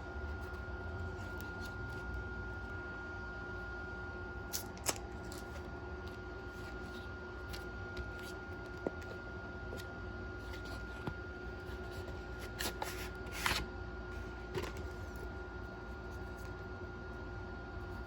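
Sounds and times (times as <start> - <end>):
faint steady hum: 0.0 - 18.0
paper and card rustling: 0.3 - 2.2, 4.6 - 15.3.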